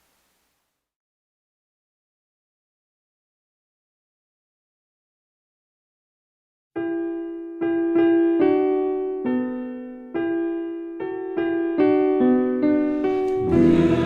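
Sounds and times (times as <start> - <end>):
slow piano melody: 6.8 - 14.0.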